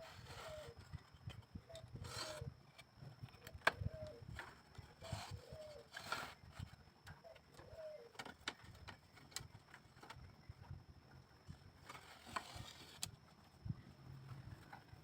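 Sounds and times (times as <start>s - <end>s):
dove cooing: 0.0s - 2.6s, 3.5s - 6.5s, 7.1s - 8.4s.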